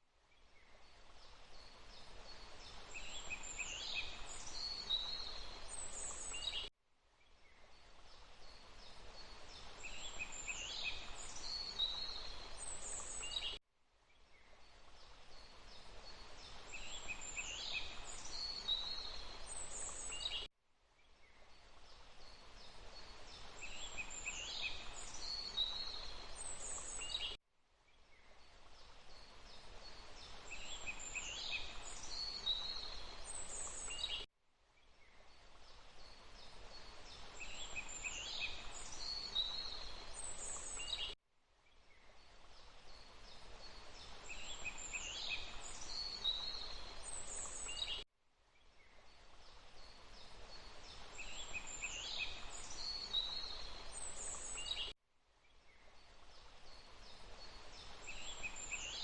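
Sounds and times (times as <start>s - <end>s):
small birds chirping: 0.3s - 48.0s, 48.6s - 59.0s
running water: 7.8s - 13.5s, 14.6s - 20.5s, 21.4s - 27.3s, 35.3s - 41.0s.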